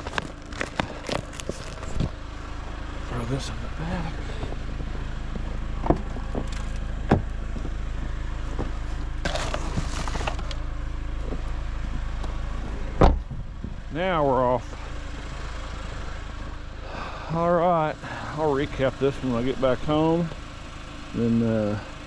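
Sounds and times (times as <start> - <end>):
truck engine idling: 0.0 - 22.0
rustle: 8.8 - 10.6
gear thumping into truck: 12.2 - 13.8.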